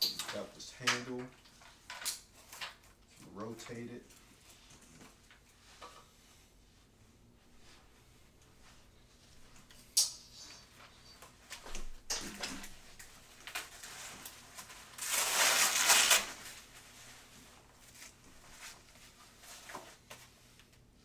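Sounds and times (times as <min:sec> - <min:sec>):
harness straps clicking and rustling: 0:00.0 - 0:06.0, 0:09.5 - 0:20.8
scraping rustle: 0:10.3 - 0:20.7.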